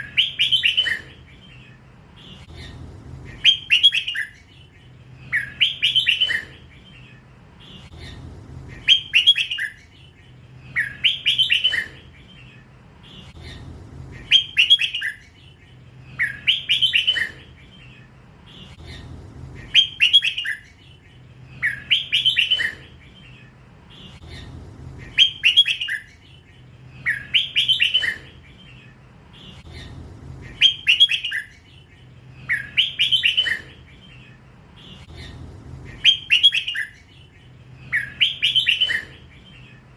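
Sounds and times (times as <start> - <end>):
bird singing warbled phrase: 0.0 - 39.9.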